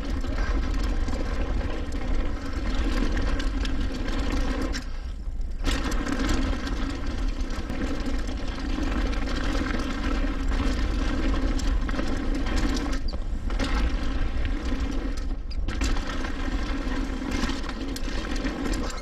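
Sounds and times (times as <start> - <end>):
bicycle freewheel buzzing: 0.0 - 19.0
wind and trail rumble: 0.0 - 19.0.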